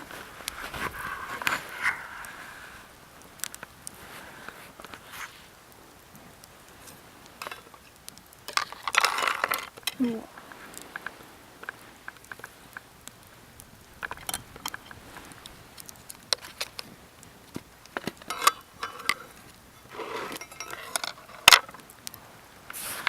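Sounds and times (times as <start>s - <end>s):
metal cookware clinking: 18.1s - 21.8s.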